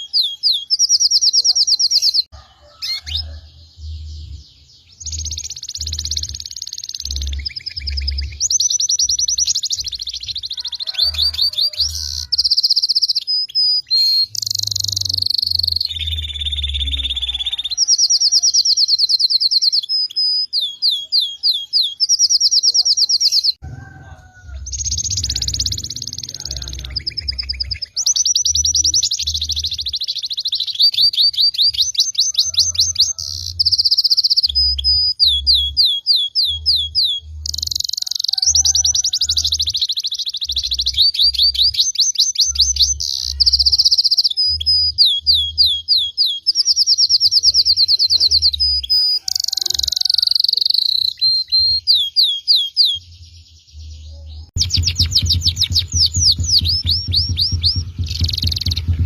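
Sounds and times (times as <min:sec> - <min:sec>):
songbirds singing: 0:00.0 - 0:59.0
low irregular thumps: 0:54.6 - 0:59.0.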